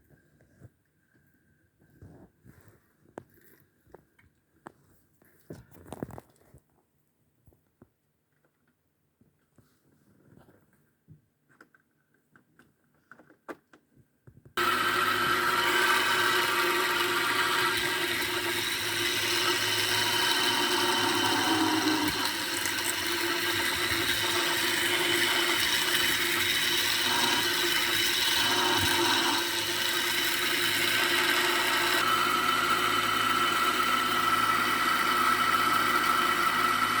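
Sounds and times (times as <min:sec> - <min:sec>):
drill press motor whining: 0:14.6 - 0:37.0.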